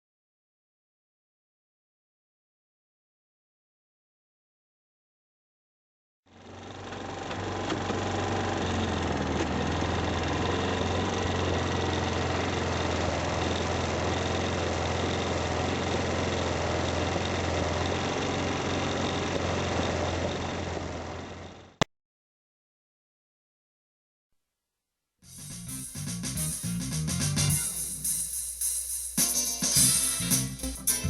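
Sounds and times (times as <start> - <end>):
atv engine running: 6.3 - 21.8.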